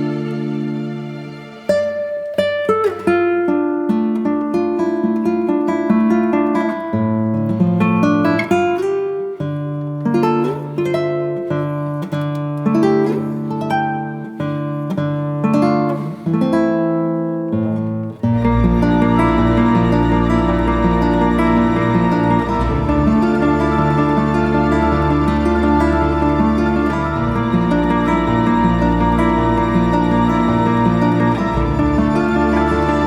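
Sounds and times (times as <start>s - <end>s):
acoustic guitar plucking: 0.0s - 33.0s
bass line: 18.4s - 33.0s.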